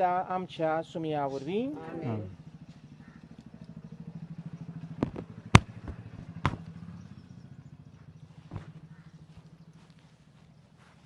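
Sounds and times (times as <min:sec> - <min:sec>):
engine idling: 0:00.0 - 0:11.0
sharp cracks: 0:04.8 - 0:06.8.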